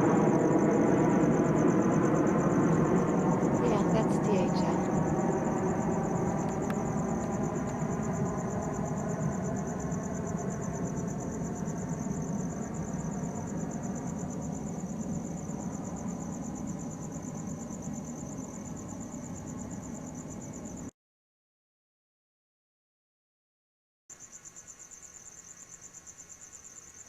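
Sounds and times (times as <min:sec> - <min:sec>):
crickets chirping: 0:00.0 - 0:20.9, 0:24.1 - 0:27.0
jet rumble: 0:00.0 - 0:20.9.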